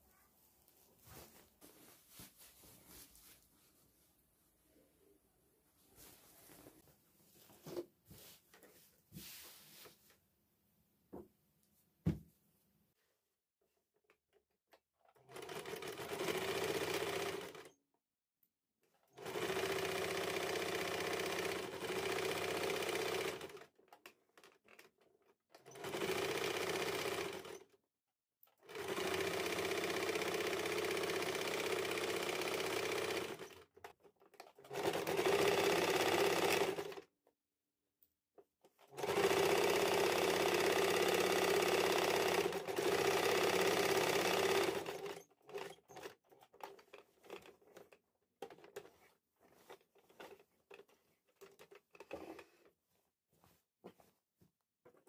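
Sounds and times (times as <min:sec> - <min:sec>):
sewing machine stitching: 0:15.0 - 0:17.8, 0:19.0 - 0:27.8, 0:28.6 - 0:37.1, 0:38.7 - 0:52.7.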